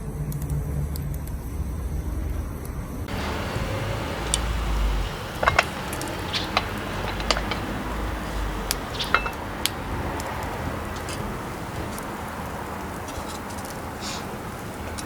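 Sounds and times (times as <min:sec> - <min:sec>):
light clicks and metallic clinks: 0:03.1 - 0:15.0.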